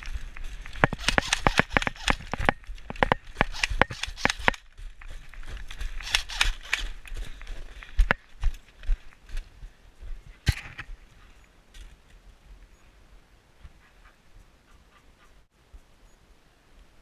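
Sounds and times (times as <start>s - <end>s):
rustling: 0.0s - 9.5s
running footsteps on dry ground: 0.0s - 12.4s.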